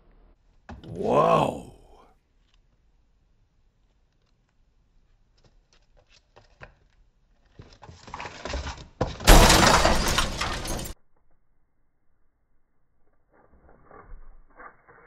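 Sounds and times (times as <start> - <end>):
glass breaking and shattering: 9.3 - 10.9.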